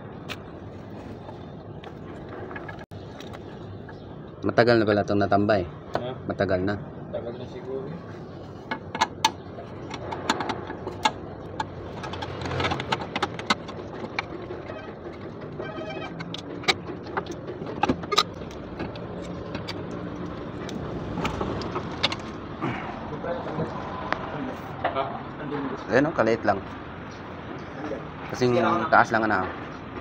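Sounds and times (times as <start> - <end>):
steady background noise: 0.0 - 30.0
sharp clicks and knocks: 8.6 - 22.5.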